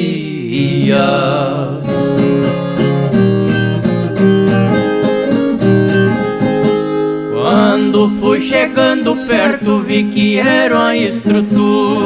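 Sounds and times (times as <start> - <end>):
person singing: 0.0 - 2.8, 7.3 - 12.0
plucked and strummed guitar: 0.0 - 12.0.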